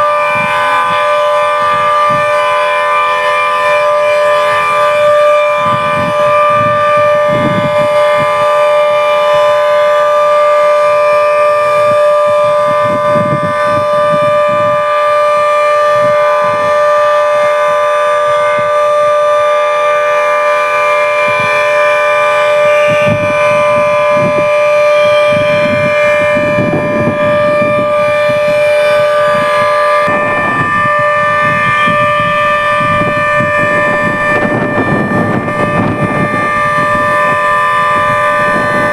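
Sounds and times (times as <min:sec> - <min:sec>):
civil defence siren steady tone: 0:00.0 - 0:38.9
low gusts of noise: 0:00.0 - 0:38.9.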